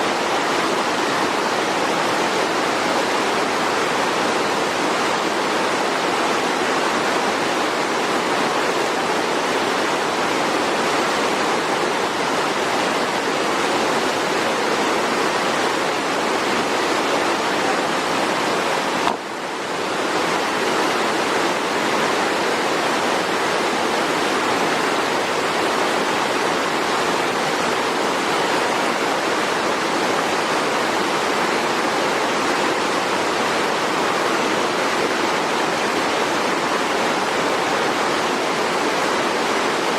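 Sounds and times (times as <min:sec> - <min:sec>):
waterfall and river rushing: 0:00.0 - 0:39.9.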